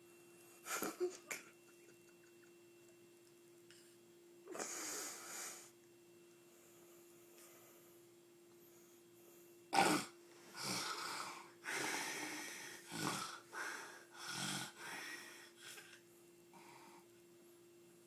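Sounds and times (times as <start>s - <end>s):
steady low hum: 0.0s - 18.0s
person snoring: 9.7s - 15.5s
sharp snort: 9.8s - 11.3s.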